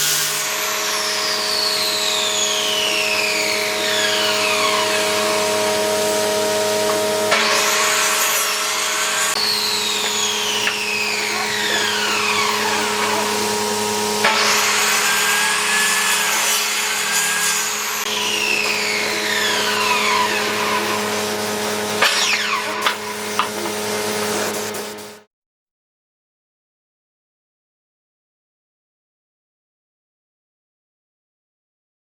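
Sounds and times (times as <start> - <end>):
power tool grinding wood: 0.0 - 25.0.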